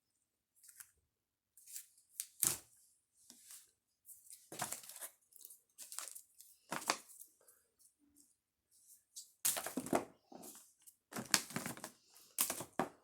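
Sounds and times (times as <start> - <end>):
packages crinkling and rustling: 4.2 - 7.3, 9.4 - 13.0.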